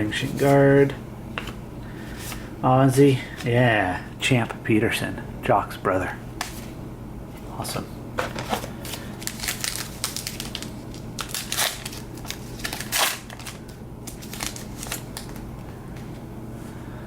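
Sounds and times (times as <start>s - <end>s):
trading cards rustling and clicking: 8.2s - 16.2s.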